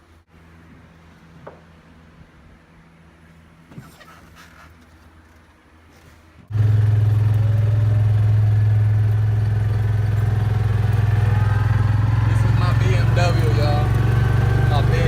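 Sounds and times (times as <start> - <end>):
small engine running: 6.5 - 15.0.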